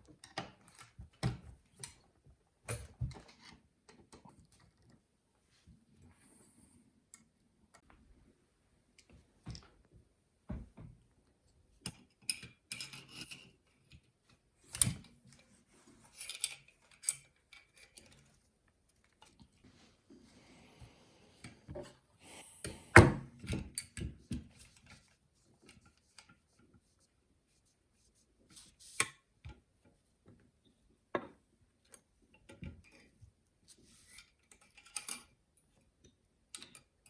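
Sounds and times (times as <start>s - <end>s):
metal parts clicking and tapping: 16.1s - 18.3s, 34.1s - 35.3s, 36.5s - 37.0s.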